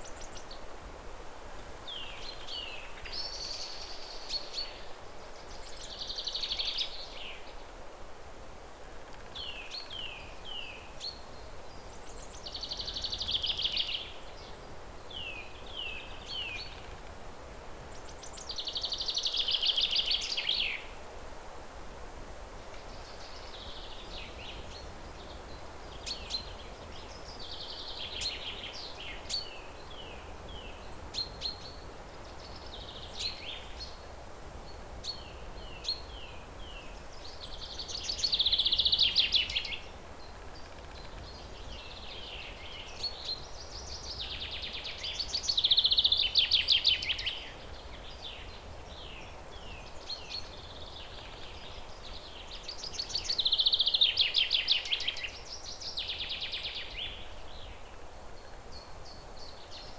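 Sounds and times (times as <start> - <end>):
faint background noise: 0.0 - 59.9
birds singing: 9.2 - 17.1, 22.8 - 34.1, 34.7 - 59.9.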